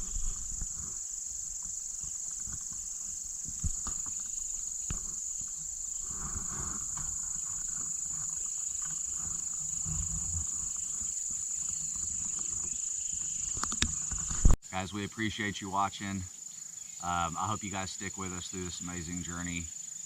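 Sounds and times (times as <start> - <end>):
insects chorus: 0.0 - 20.0.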